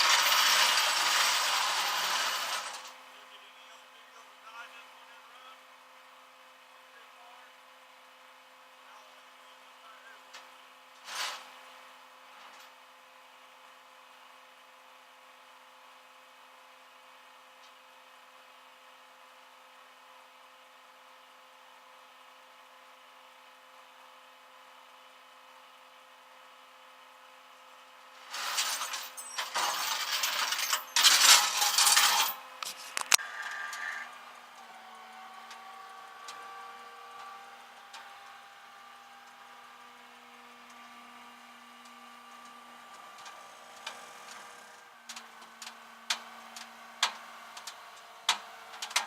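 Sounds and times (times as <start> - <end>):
metallic clattering and rattling: 28.2 - 33.2.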